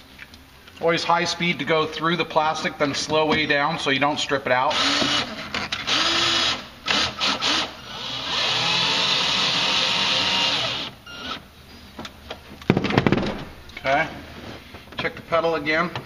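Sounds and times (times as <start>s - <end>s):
power drill driving screw: 4.7s - 11.4s.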